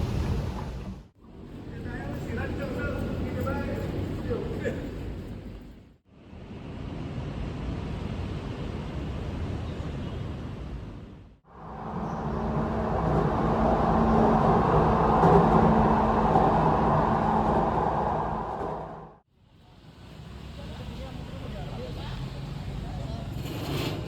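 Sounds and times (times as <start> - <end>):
vehicle engine rumble: 11.5 - 23.4.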